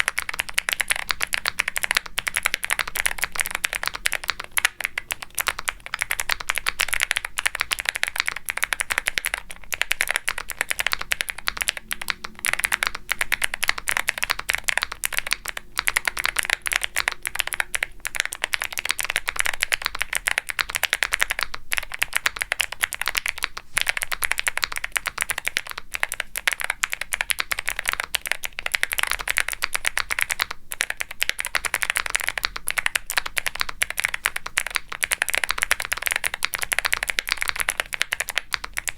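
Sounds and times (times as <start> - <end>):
clicky mechanical keyboard typing: 0.0 - 38.9.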